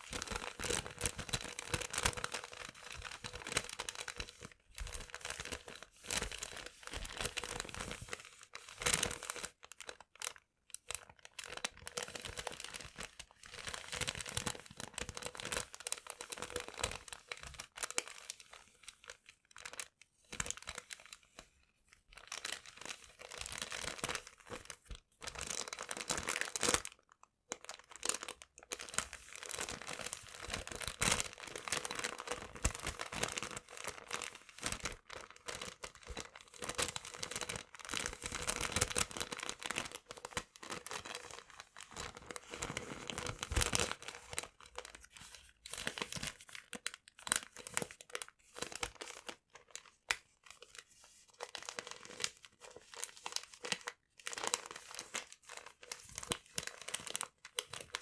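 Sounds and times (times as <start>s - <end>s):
paper crumpling and tearing: 28.8s - 46.6s.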